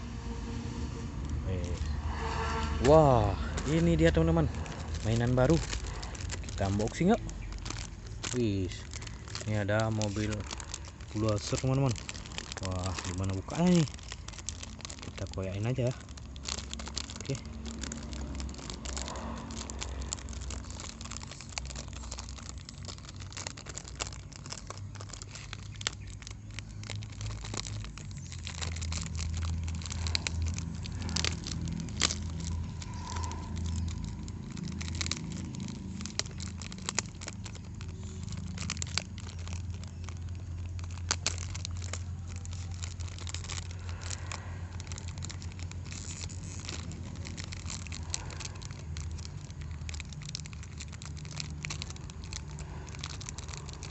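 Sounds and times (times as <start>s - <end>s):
steady low hum: 0.0s - 6.4s
cardboard and plastic packaging crinkling: 1.1s - 53.9s.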